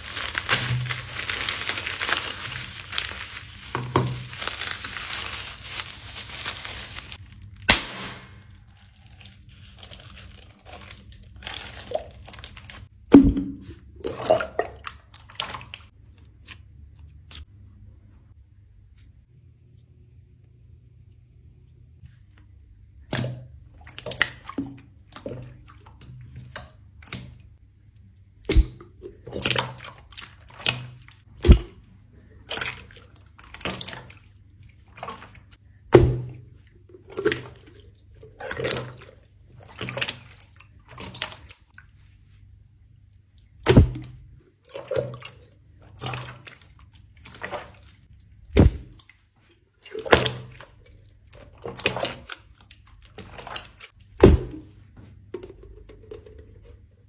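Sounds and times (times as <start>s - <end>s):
slime squishing and popping: 0.0s - 8.5s.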